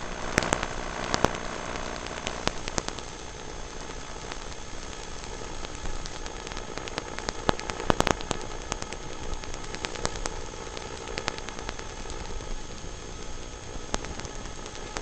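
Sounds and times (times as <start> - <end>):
rc car driving on gravel: 0.0 - 15.0.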